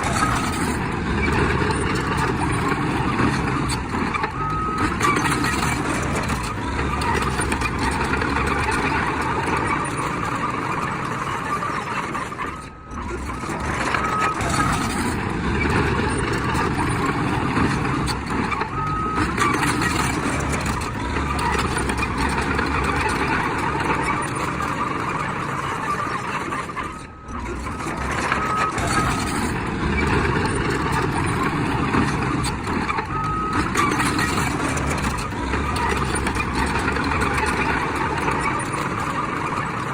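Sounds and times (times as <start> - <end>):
heavy machinery running: 0.0 - 39.9
reversing alarm beeps: 4.2 - 6.2, 18.6 - 20.2, 26.9 - 32.2, 33.0 - 35.1.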